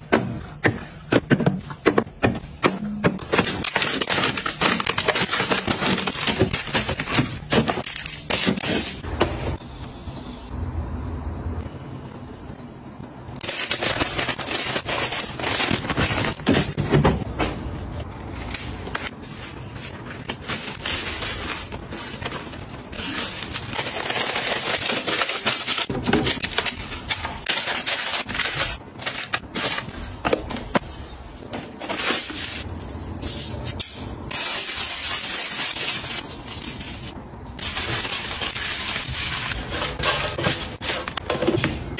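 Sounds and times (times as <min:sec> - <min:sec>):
plastic wrappers crinkling: 0:03.2 - 0:09.0, 0:13.4 - 0:16.9, 0:17.8 - 0:30.4, 0:34.3 - 0:41.9.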